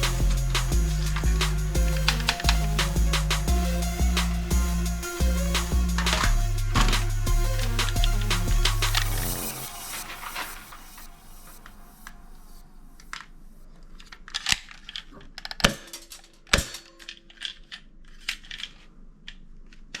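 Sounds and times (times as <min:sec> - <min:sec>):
hard objects clicking and knocking: 0:00.0 - 0:03.5, 0:05.6 - 0:07.2.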